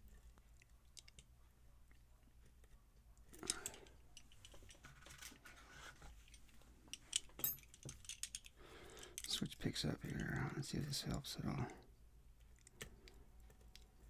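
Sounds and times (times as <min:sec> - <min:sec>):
lock pick clicking and scratching: 0:06.2 - 0:10.4.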